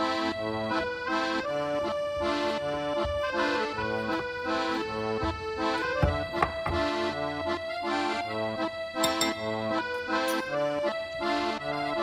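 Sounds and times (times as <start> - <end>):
slow accordion tune: 0.0 - 12.0.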